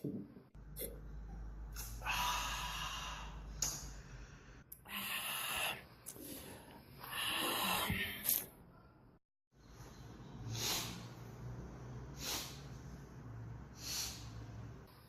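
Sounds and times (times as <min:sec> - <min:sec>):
person breathing noisily: 0:01.9 - 0:08.4, 0:13.7 - 0:14.6.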